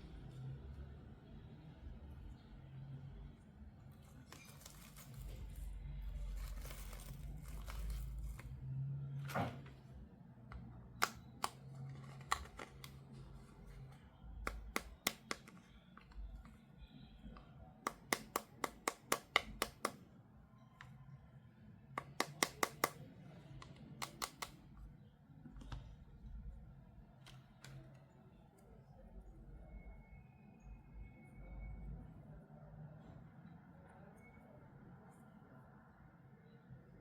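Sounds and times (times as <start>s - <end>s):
packaging clicks and snips: 10.5s - 16.6s, 17.4s - 20.0s, 22.0s - 24.9s.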